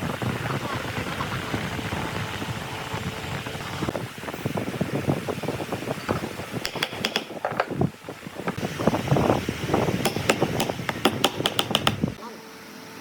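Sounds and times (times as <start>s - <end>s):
sharp clicks and knocks: 6.1s - 7.8s, 10.0s - 12.2s.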